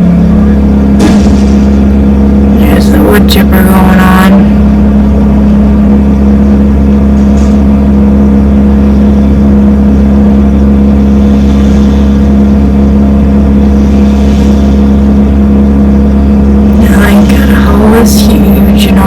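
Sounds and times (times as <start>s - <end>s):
wood chipper engine droning: 0.0s - 19.0s.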